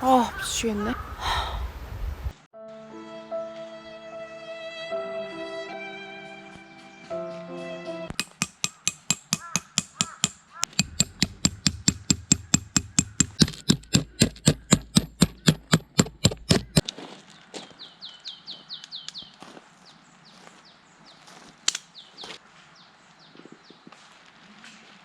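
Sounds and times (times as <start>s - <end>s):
hammer striking tent peg: 8.1s - 16.8s
bird calling falling notes: 8.5s - 16.8s.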